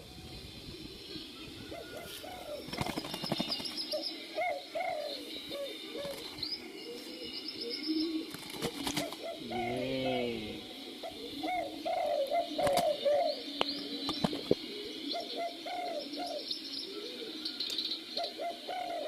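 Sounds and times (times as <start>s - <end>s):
faint high bird chirps: 0.1s - 19.0s
doves cooing: 0.8s - 19.0s
wings flapping: 2.5s - 3.9s, 6.0s - 6.4s, 8.3s - 9.4s, 12.6s - 13.0s, 14.0s - 14.6s.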